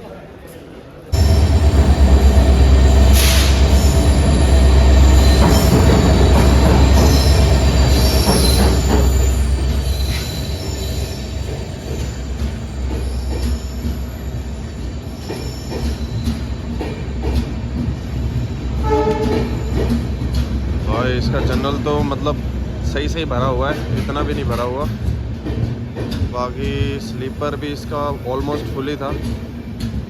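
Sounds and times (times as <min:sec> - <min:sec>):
train rumbling past: 0:01.1 - 0:30.0
metallic wheel squeals: 0:01.2 - 0:16.7.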